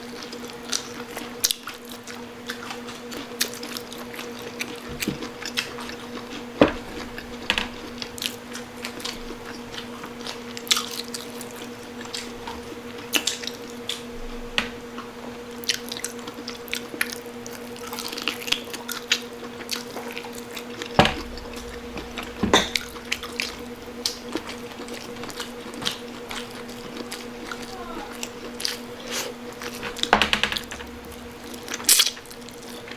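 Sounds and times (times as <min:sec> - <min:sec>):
wet chewing and lip smacking: 0:00.1 - 0:06.5, 0:22.8 - 0:30.1
low hum: 0:21.0 - 0:27.6.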